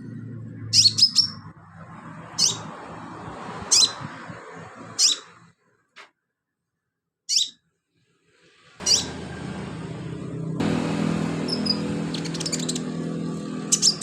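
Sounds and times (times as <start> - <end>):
bird chirping: 0.6 - 1.5, 7.3 - 7.6, 8.8 - 9.2, 11.4 - 13.0, 13.7 - 14.0.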